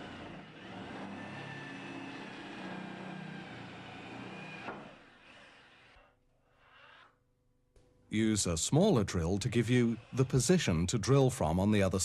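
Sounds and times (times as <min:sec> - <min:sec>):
electric drill boring wood: 0:00.0 - 0:06.1, 0:09.5 - 0:10.6.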